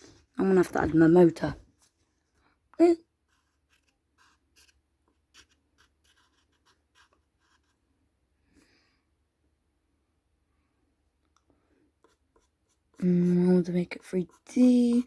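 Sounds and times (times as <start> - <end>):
pencil scratching on paper: 3.2 - 7.8, 12.0 - 15.0.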